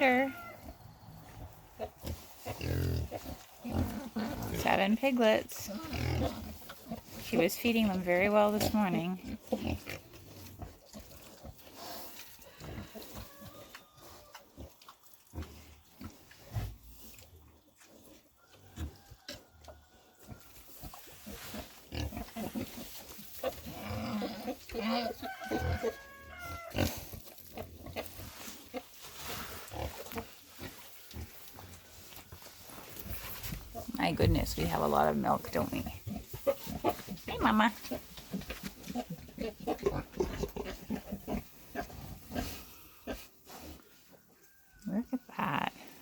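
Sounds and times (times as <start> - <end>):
pigs grunting: 0.2 - 4.9, 5.6 - 7.6, 20.8 - 28.9, 33.8 - 43.9
pigs grunting softly: 0.4 - 4.6, 8.5 - 31.9, 35.6 - 46.0.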